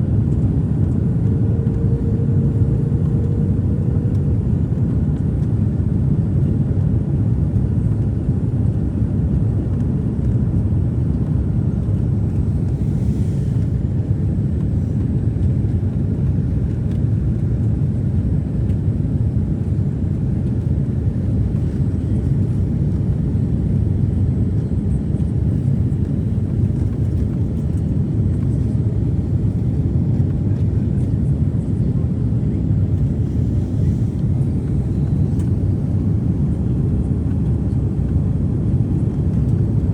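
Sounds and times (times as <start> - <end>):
airliner cabin drone: 0.0 - 39.9.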